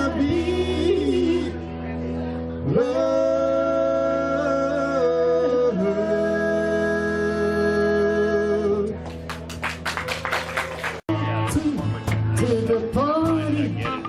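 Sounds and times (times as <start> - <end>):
person singing: 0.0 - 1.6, 2.6 - 9.0, 11.1 - 14.0
live band playing: 6.8 - 14.0
audience clapping: 9.0 - 11.1.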